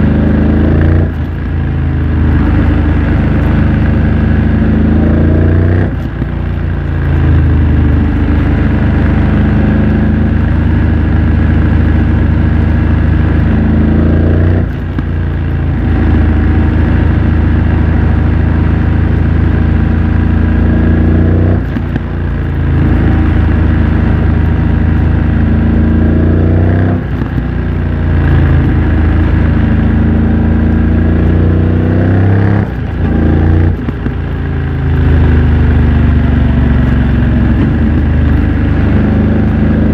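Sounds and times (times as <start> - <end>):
motorcycle engine changing gears: 0.0 - 39.9.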